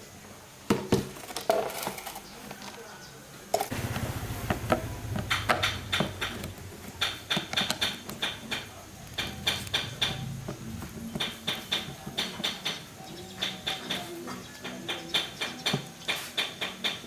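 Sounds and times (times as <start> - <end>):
low hum: 3.7 - 11.5.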